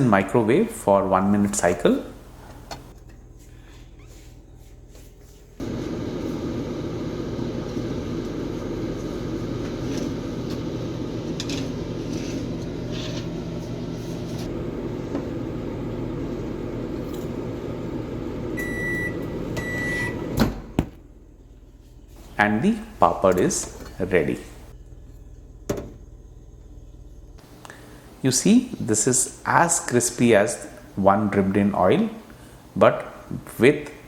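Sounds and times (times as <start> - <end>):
microwave oven humming: 2.1 - 28.2.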